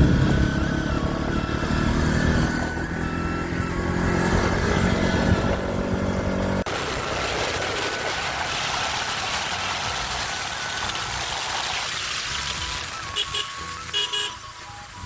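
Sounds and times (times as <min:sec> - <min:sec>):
motorcycle engine running: 0:00.0 - 0:08.8.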